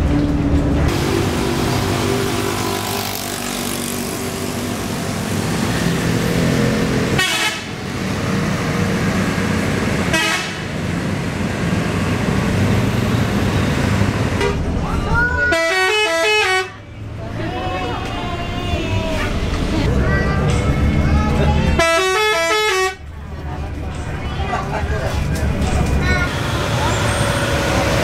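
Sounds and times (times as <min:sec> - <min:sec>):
diesel engine running: 0:00.0 - 0:15.3, 0:16.8 - 0:28.0
multi-tone bus horn tune: 0:07.0 - 0:07.9, 0:10.0 - 0:10.8, 0:14.3 - 0:14.6, 0:15.5 - 0:16.8, 0:21.7 - 0:23.1.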